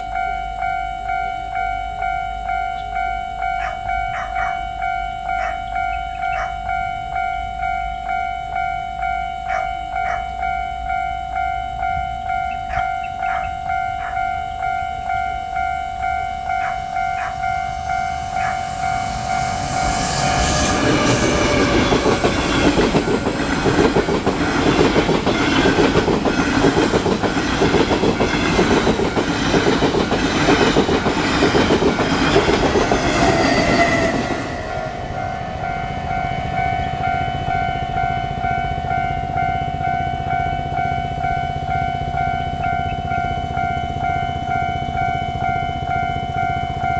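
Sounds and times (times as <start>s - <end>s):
level crossing warning bell: 0.0s - 46.9s
train wheels clattering over rails: 19.6s - 35.2s.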